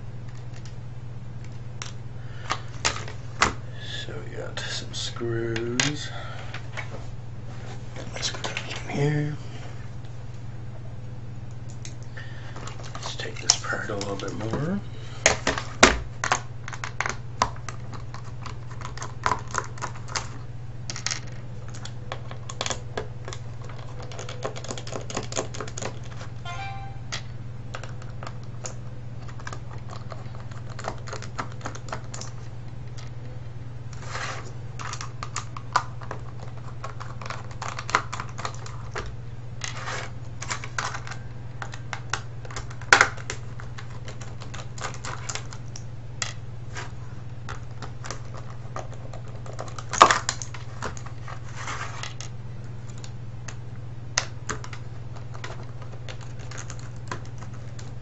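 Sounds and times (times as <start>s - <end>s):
steady low hum: 0.0s - 58.0s
short squeak: 26.4s - 27.1s
plastic parts clicking and rattling: 27.7s - 33.1s, 34.8s - 46.4s, 54.2s - 58.0s.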